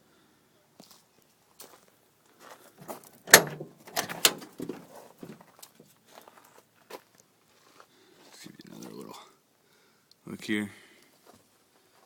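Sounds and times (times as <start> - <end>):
truck door knocks and clunks: 3.3 - 5.4.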